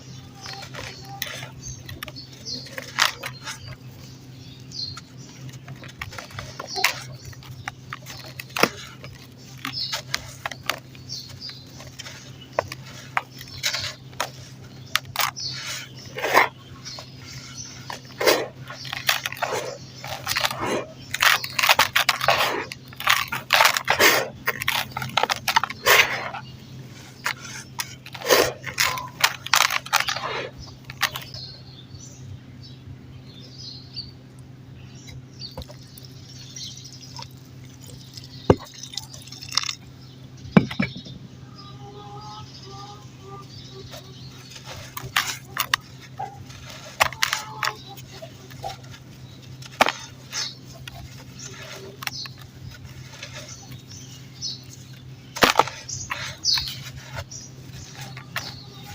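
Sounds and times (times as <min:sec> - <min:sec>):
dirt clumps crunching: 0:00.0 - 0:31.5, 0:43.5 - 0:58.9
low steady hum: 0:00.0 - 0:58.9.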